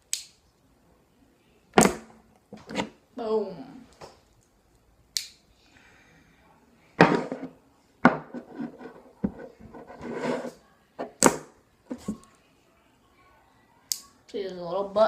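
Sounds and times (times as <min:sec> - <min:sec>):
rubbing: 0:08.2 - 0:11.1.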